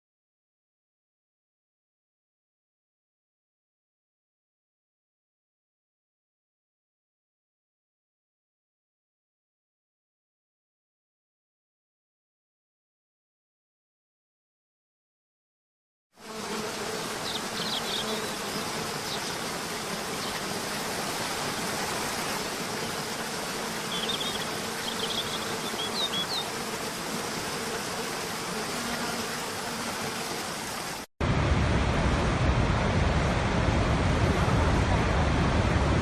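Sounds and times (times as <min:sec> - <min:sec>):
bird chirps: 0:17.2 - 0:18.4, 0:23.9 - 0:26.4
deep rushing noise: 0:31.2 - 0:36.0.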